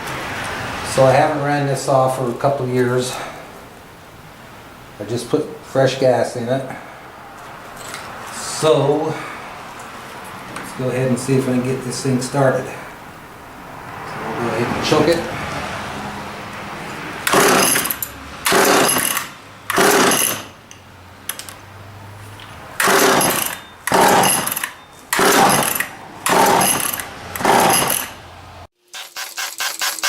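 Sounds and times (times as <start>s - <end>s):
chainsaw starter cord pulls: 17.2s - 20.5s, 22.8s - 28.2s, 28.9s - 30.0s.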